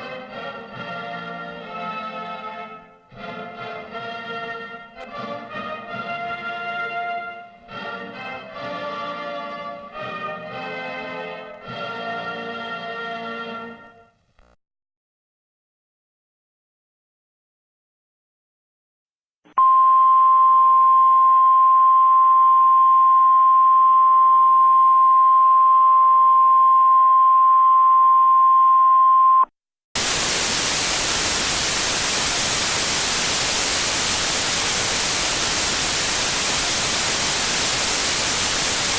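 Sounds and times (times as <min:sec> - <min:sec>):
faint hiss: 0:30.0 - 0:38.9
loud television static: 0:30.0 - 0:38.9.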